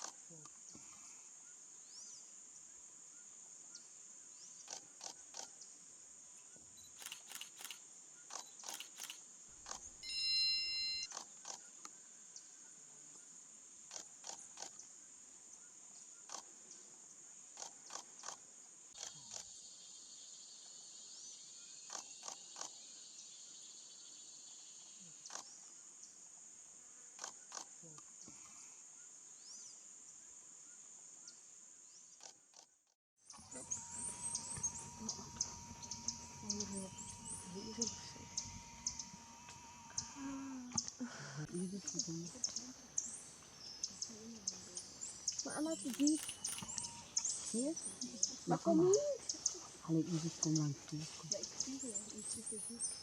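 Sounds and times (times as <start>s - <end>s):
insects droning: 0.0s - 32.6s, 33.2s - 53.0s
short sharp clicks: 7.0s - 9.8s.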